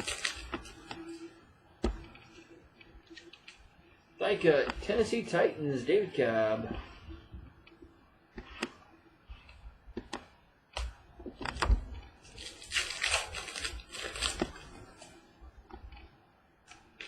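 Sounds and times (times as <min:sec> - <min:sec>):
wrapper crinkling: 0:00.0 - 0:00.8, 0:12.2 - 0:14.8.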